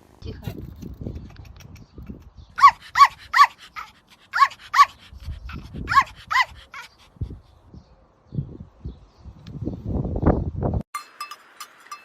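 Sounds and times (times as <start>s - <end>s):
dog yapping: 2.6s - 7.1s.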